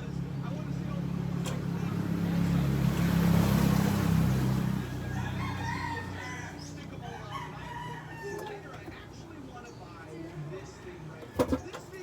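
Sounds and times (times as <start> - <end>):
vehicle engine droning: 0.0 - 7.0
rooster crowing: 4.9 - 8.6.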